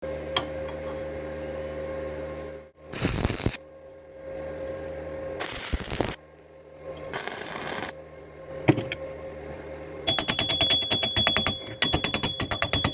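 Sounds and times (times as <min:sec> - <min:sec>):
crackling electric arc: 0:02.9 - 0:03.6, 0:05.4 - 0:06.2, 0:07.1 - 0:08.0
stick welder humming: 0:02.9 - 0:12.9.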